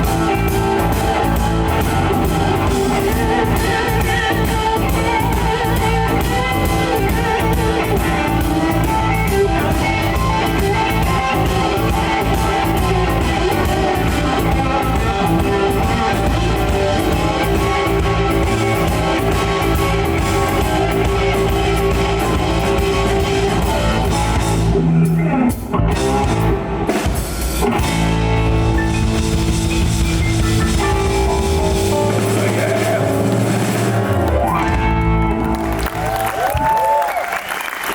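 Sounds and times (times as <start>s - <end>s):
live rock band playing: 0.0s - 37.9s.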